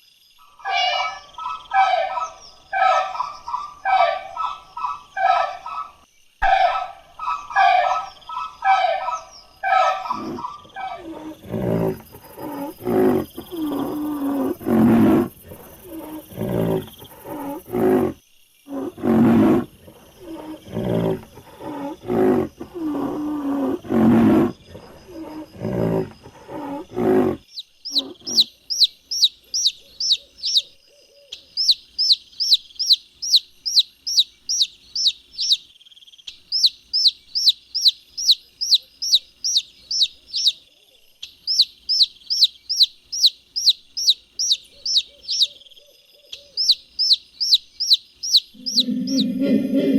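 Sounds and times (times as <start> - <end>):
bird chirping: 0.4 - 49.9
deep rough animal calls: 9.7 - 28.4, 48.6 - 49.9.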